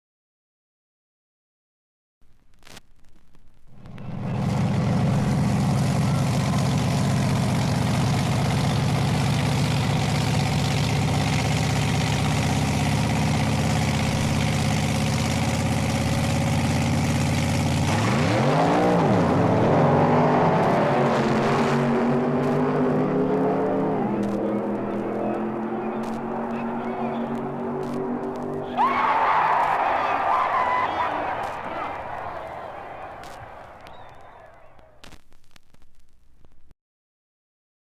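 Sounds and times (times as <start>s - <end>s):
engine idling and revving: 3.7s - 28.7s.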